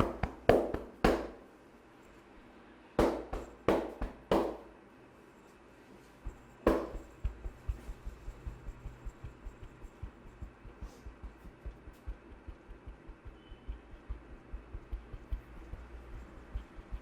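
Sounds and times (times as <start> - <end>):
hands slapping body: 3.0 - 4.6, 6.7 - 7.9.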